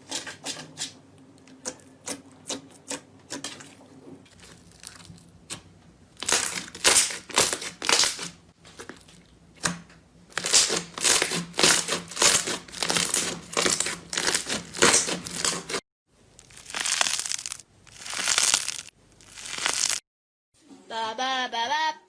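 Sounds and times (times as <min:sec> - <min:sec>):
slime crunching when squeezed: 0:06.2 - 0:09.0, 0:10.3 - 0:15.8, 0:16.4 - 0:20.0.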